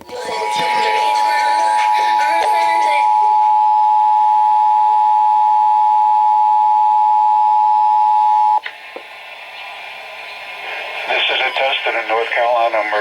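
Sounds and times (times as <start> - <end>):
steady two-tone alert signal: 0.2 - 8.6.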